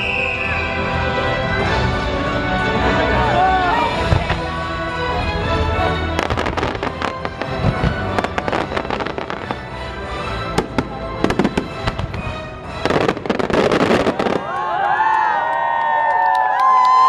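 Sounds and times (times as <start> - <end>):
show music: 0.0 - 14.6
fireworks bangs and crackles: 3.8 - 4.6, 6.0 - 9.8, 10.4 - 14.6.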